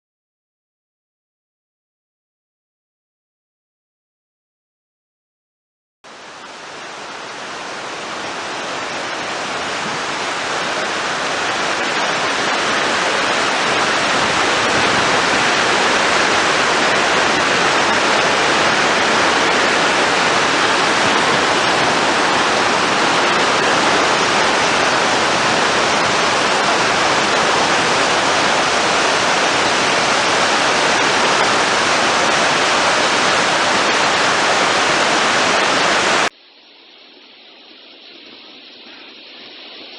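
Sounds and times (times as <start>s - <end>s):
waterfall rushing: 6.1s - 36.3s.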